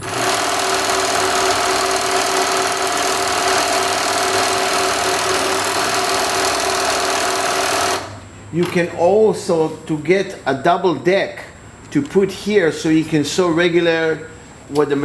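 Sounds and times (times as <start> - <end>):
industrial sewing machine running: 0.0 - 8.8.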